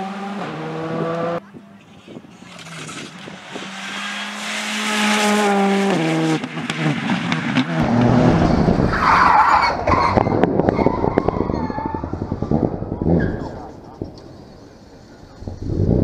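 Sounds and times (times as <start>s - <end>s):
rally car engine revving: 0.0s - 16.0s
engine rumble and crackling: 6.2s - 16.0s.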